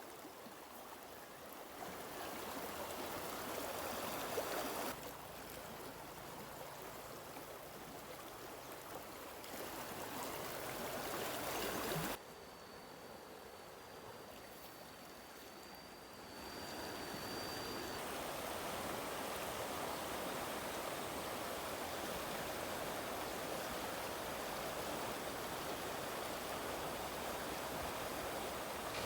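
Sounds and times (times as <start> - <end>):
faint high whine: 10.7 - 29.0.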